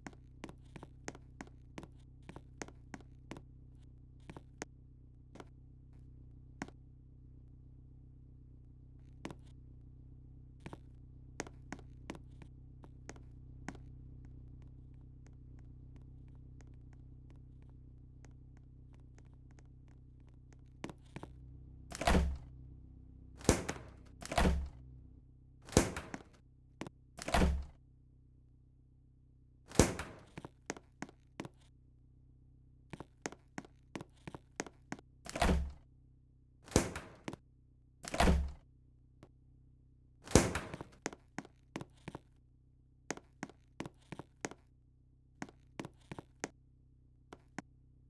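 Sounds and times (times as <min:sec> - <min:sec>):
low hum: 0:00.0 - 0:48.0
dull thuds: 0:21.9 - 0:22.5, 0:23.4 - 0:24.8, 0:25.7 - 0:26.4, 0:27.2 - 0:27.8, 0:29.7 - 0:30.5, 0:35.3 - 0:35.8, 0:36.7 - 0:37.4, 0:38.0 - 0:38.6, 0:40.3 - 0:41.2.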